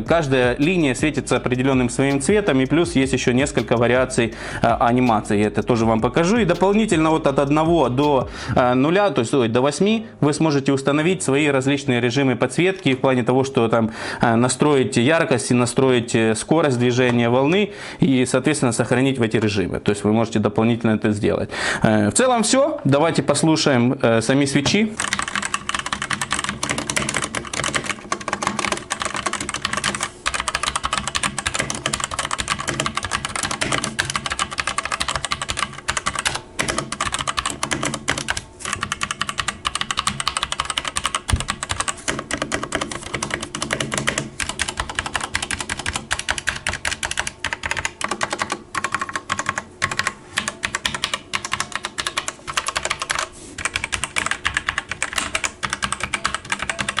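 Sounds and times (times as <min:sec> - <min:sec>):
mechanical keyboard typing: 0:00.0 - 0:08.3, 0:24.6 - 0:57.0.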